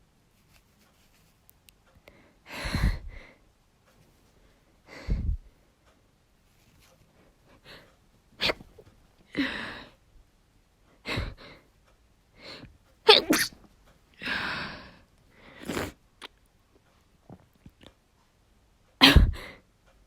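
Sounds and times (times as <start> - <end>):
woman sneezing: 13.1 - 13.6, 19.0 - 19.4.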